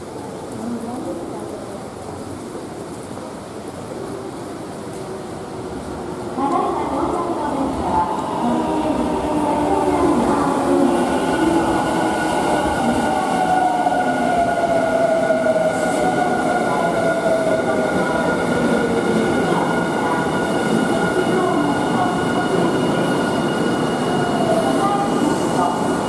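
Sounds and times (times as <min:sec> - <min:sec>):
electric train rumble: 0:05.3 - 0:26.0.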